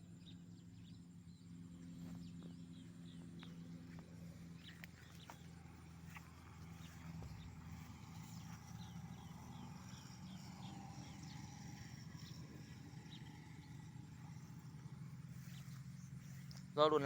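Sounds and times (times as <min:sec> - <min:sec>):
low hum: 0:00.0 - 0:17.0.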